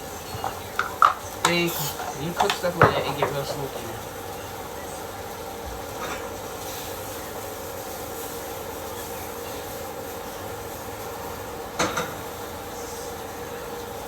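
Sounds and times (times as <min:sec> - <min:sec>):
utensil clattering: 0:00.0 - 0:04.1
food frying in a pan: 0:00.0 - 0:14.0
range hood fan humming: 0:00.0 - 0:14.0.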